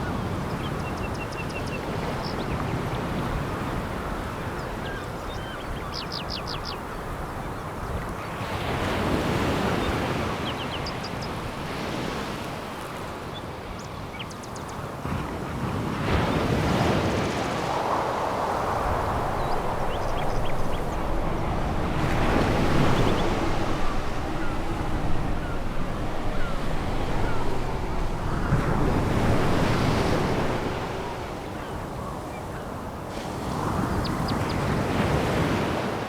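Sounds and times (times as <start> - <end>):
waves breaking on pebble beach: 15.0 - 36.0.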